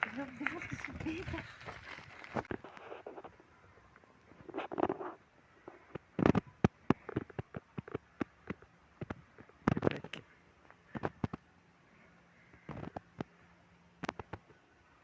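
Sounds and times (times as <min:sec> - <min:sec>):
rustling bursts: 0:00.0 - 0:03.3
footsteps walking up a slope: 0:00.0 - 0:03.4.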